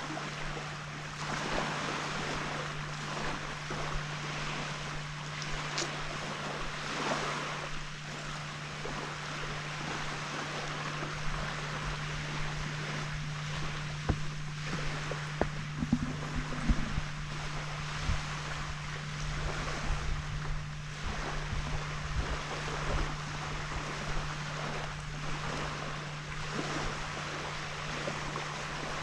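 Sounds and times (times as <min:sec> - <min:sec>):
small waves washing onto sand: 0:00.0 - 0:29.0
steady low hum: 0:00.0 - 0:29.0
wind on microphone: 0:00.0 - 0:29.0.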